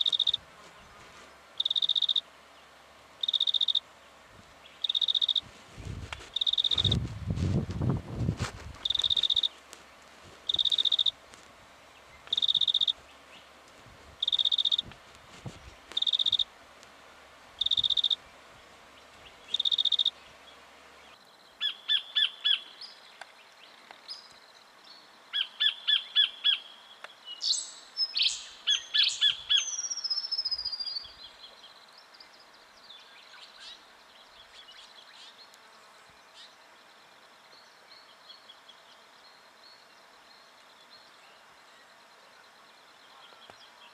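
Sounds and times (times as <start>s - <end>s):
bird calling: 0.0s - 0.4s, 1.6s - 2.2s, 3.2s - 3.8s, 4.6s - 5.5s, 6.2s - 7.0s, 8.8s - 9.7s, 10.4s - 11.2s, 11.9s - 13.6s, 14.2s - 14.9s, 15.5s - 16.5s, 17.6s - 23.0s, 25.3s - 31.7s
rapid ticking bird notes: 0.0s - 0.4s, 1.6s - 2.2s, 3.2s - 3.9s, 4.6s - 5.4s, 6.3s - 7.0s, 8.8s - 9.7s, 10.4s - 11.2s, 11.8s - 13.6s, 14.2s - 15.0s, 15.8s - 16.5s, 17.6s - 20.8s
faint bird chatter: 6.3s - 7.0s, 19.0s - 43.9s.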